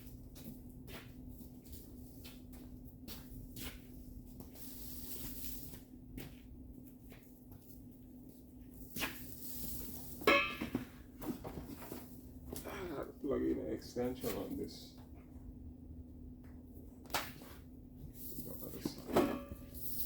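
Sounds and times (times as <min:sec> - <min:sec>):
steady low hum: 0:00.0 - 0:20.0
ringing metallic clang: 0:10.3 - 0:10.8, 0:19.2 - 0:19.7.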